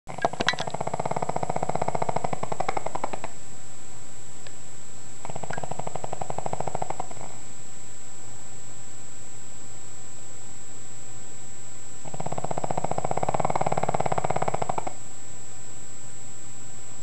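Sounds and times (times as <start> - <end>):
dog snoring: 0.1 - 3.4, 5.2 - 7.4, 12.0 - 15.0.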